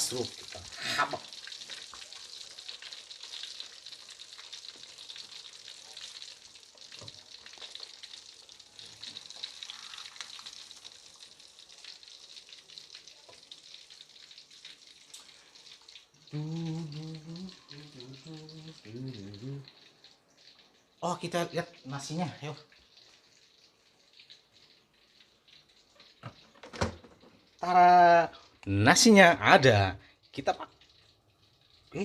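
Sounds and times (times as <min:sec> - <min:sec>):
fish sizzling in hot oil: 0:00.0 - 0:29.1.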